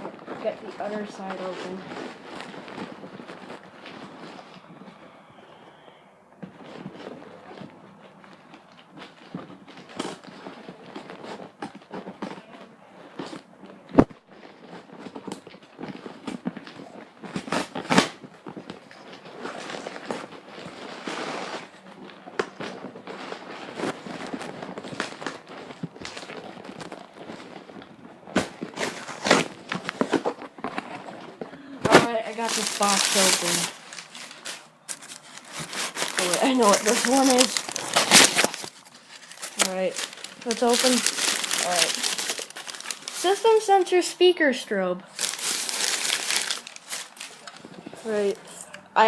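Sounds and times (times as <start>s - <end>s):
cardboard tearing and rustling: 0.0s - 4.7s, 6.5s - 44.0s, 45.0s - 48.6s.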